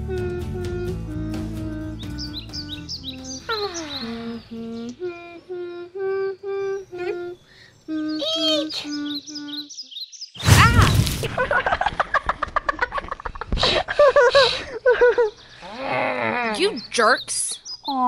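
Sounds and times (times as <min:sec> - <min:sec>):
high bird chirps: 0:02.0 - 0:05.0, 0:07.6 - 0:10.6, 0:16.7 - 0:18.0.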